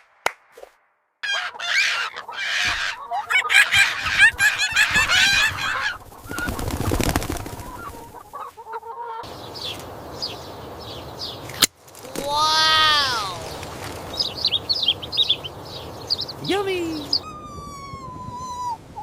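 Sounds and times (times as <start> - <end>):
farm birds clucking and chirping: 1.2 - 11.7, 13.4 - 16.4
wings flapping: 1.3 - 8.6, 11.5 - 15.5.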